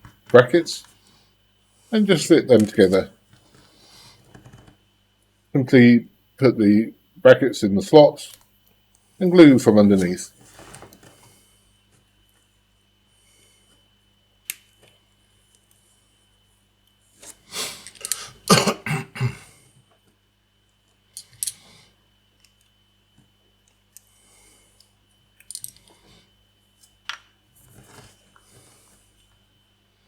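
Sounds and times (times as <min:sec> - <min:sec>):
plastic parts clicking and tapping: 0:17.9 - 0:18.2, 0:25.4 - 0:25.9.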